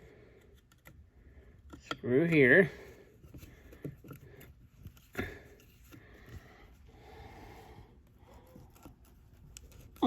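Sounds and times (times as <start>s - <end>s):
person breathing: 0.0s - 1.8s, 2.7s - 9.1s.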